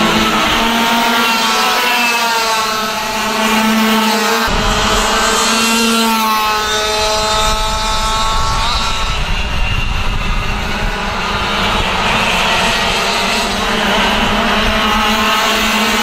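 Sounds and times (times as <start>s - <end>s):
kart engines revving: 0.0s - 16.0s
low rumble: 4.5s - 11.8s.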